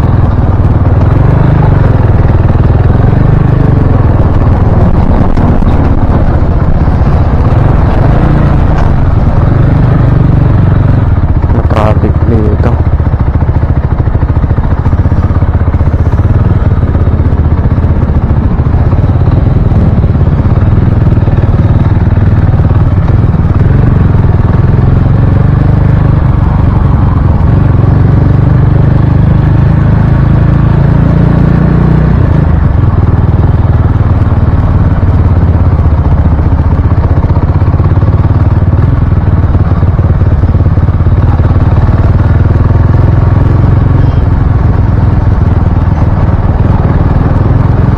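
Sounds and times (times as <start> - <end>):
motorcycle engine revving: 0.0 - 47.9
wind buffeting microphone: 2.0 - 11.3.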